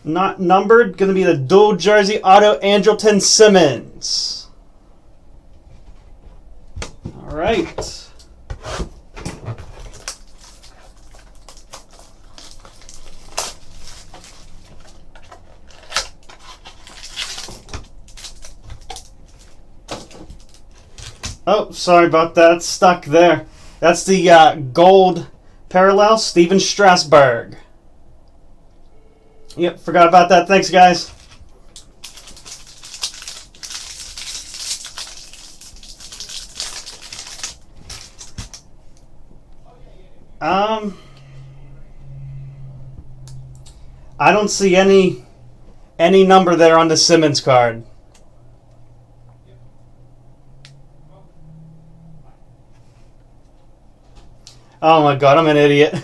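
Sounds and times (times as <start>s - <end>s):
trading cards rustling: 9.5s - 21.4s, 30.7s - 38.6s.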